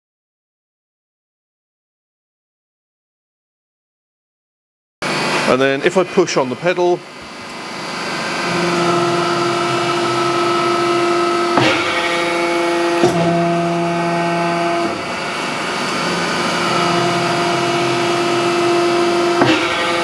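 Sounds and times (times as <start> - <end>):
hydraulic pump whine: 5.0 - 20.0
sharp metallic clunks: 9.6 - 16.8, 18.4 - 20.0.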